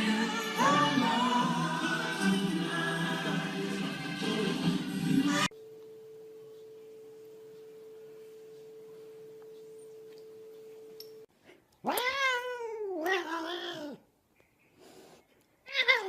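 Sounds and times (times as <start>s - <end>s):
faint steady hum: 5.4s - 11.8s
cat meowing: 11.8s - 14.0s.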